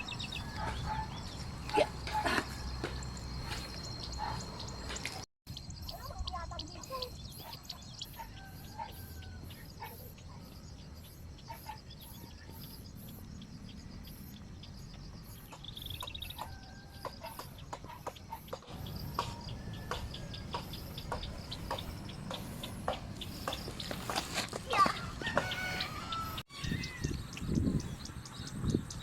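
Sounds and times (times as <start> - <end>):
birds calling: 0.0 - 29.0
chickens clucking: 15.5 - 26.2.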